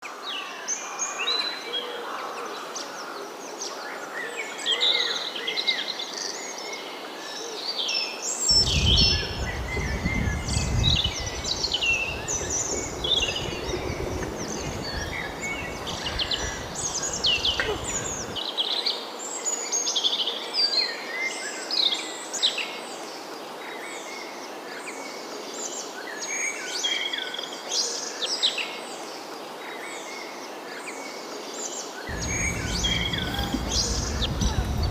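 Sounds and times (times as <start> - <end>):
birds chirping and singing: 8.5 - 18.4, 32.1 - 34.9
low rumble: 8.7 - 18.4, 32.1 - 34.9
background hiss: 30.4 - 34.9.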